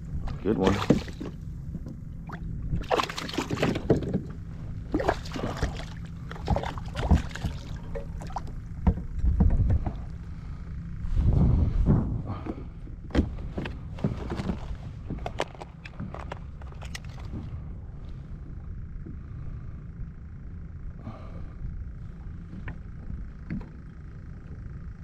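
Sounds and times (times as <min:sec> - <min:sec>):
low rumble: 0:00.0 - 0:25.0
water splashing: 0:00.6 - 0:01.4, 0:02.2 - 0:04.2, 0:04.8 - 0:08.6
soft knocks against kayak hull: 0:08.8 - 0:10.1
wind buffeting microphone: 0:09.0 - 0:13.5
wind on microphone: 0:11.0 - 0:12.5.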